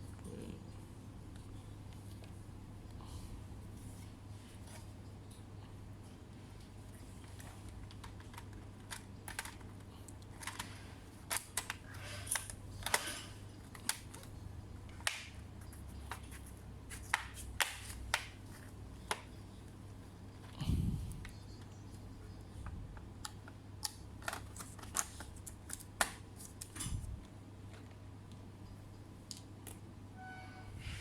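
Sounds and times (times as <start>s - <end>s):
steady low hum: 18.3s - 31.0s.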